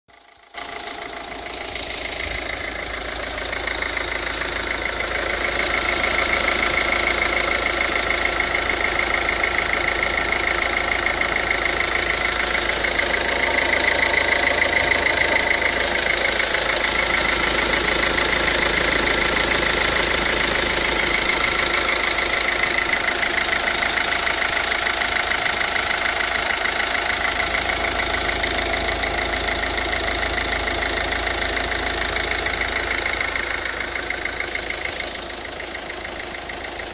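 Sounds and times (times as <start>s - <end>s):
car engine idling: 0.1s - 36.9s
fast fine engine ticking: 0.1s - 36.9s
higher wavering engine noise: 10.0s - 18.6s.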